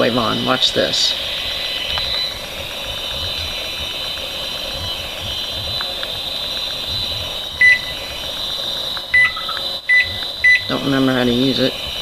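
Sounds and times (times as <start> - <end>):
steady hum from meter speaker: 0.0 - 12.0
microwave keypad beeps: 7.6 - 8.0, 9.1 - 10.8.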